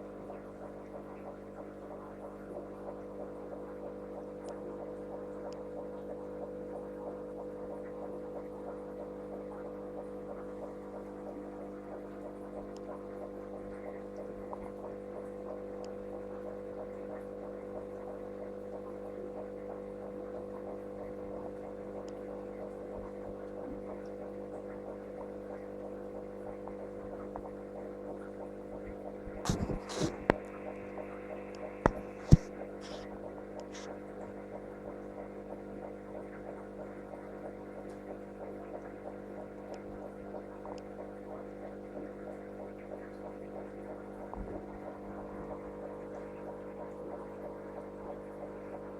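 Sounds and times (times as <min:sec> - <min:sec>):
electrical hum: 0:02.0 - 0:35.2
sharp clicks and knocks: 0:31.9 - 0:33.0.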